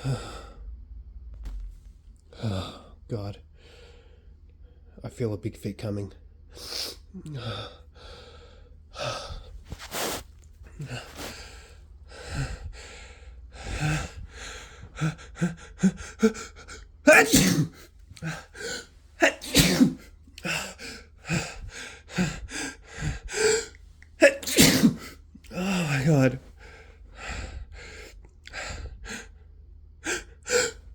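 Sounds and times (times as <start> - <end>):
person gasping in-breaths: 7.2 - 23.8
person sneezing: 9.7 - 11.6, 17.1 - 18.4, 19.2 - 20.1, 24.2 - 26.1.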